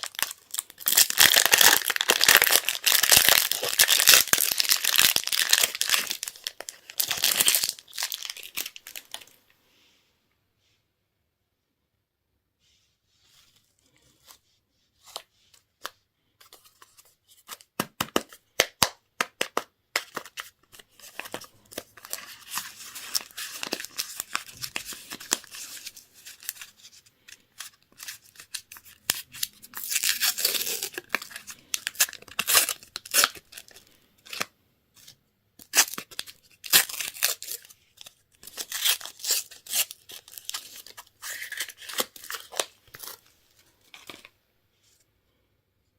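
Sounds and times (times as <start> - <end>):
candy wrappers tearing and crinkling: 0.0 - 9.4, 19.5 - 44.3.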